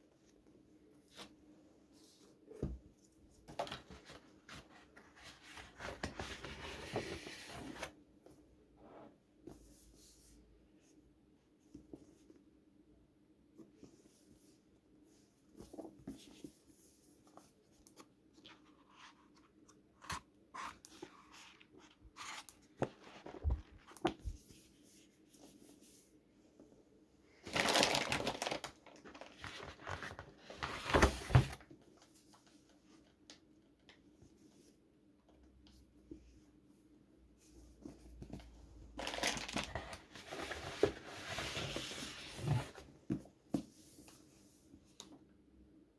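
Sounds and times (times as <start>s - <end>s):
packaging tearing and crinkling: 27.5s - 28.6s
packaging rustling: 27.5s - 31.2s, 39.0s - 42.4s.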